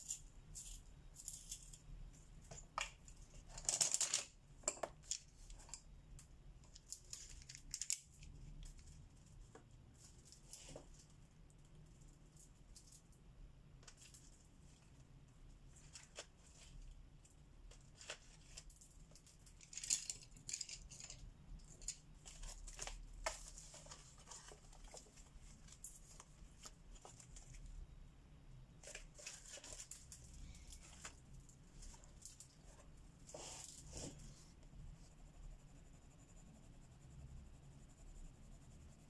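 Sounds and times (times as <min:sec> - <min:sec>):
scratchy colouring on paper: 0:32.6 - 0:39.0.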